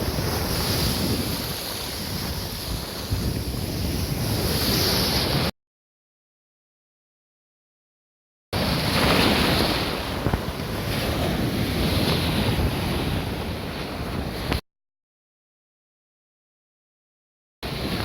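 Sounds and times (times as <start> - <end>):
sea waves washing ashore: 0.0 - 5.5, 8.6 - 14.6, 17.6 - 18.0
wind rumbling on microphone: 0.0 - 5.5, 8.6 - 14.6, 17.6 - 18.0.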